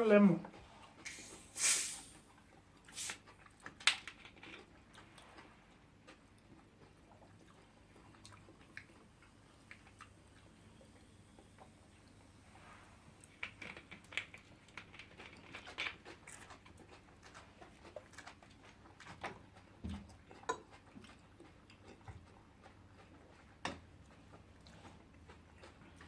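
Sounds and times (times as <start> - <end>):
quiet chewing: 0.3 - 26.0.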